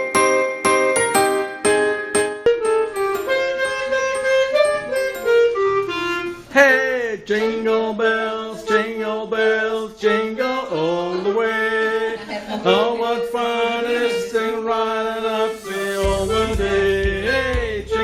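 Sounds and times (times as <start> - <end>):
sustained two-note accompaniment: 0.0 - 6.5
wind instrument melody: 0.0 - 6.5, 15.5 - 17.1.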